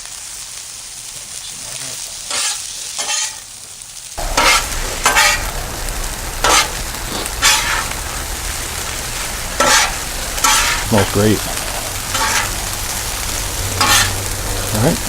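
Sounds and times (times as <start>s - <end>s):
rice sizzling on a griddle: 0.0s - 15.0s
metal spatulas scraping: 2.3s - 3.4s, 4.2s - 5.5s, 6.4s - 8.0s, 9.6s - 12.7s, 13.8s - 14.3s.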